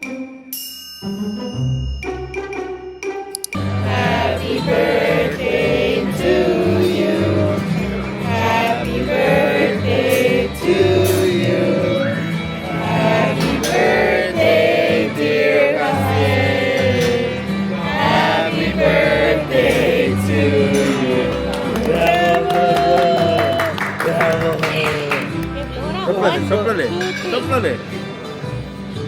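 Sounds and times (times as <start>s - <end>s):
group of voices singing: 3.6s - 23.6s.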